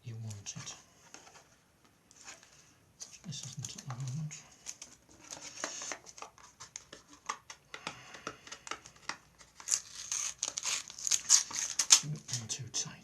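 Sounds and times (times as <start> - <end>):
tape peeling and crackling: 8.5 - 12.5.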